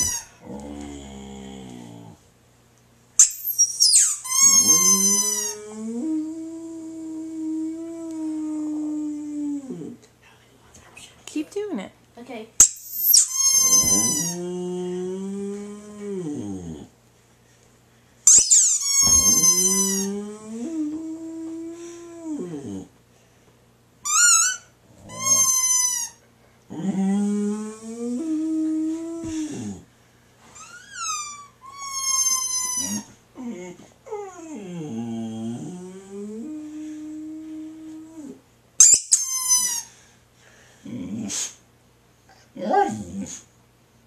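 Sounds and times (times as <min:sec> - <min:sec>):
squeaky dog toy squeaks: 0:00.0 - 0:00.3, 0:03.2 - 0:05.6, 0:12.6 - 0:14.3, 0:18.3 - 0:20.0, 0:24.0 - 0:26.2, 0:30.6 - 0:33.0, 0:38.8 - 0:39.9
dog howling: 0:04.4 - 0:10.0, 0:13.4 - 0:16.9, 0:19.0 - 0:22.9, 0:24.2 - 0:26.0, 0:30.7 - 0:38.4.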